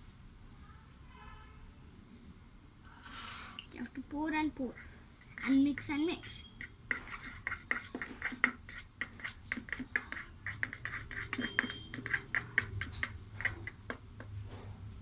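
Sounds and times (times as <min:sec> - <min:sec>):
utensil scraping container: 0:03.0 - 0:14.5
utensil stirring slime: 0:03.6 - 0:14.5.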